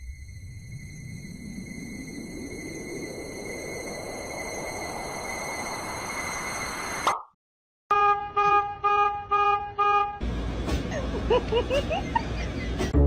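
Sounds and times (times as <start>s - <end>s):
horn honking: 7.9s - 10.3s.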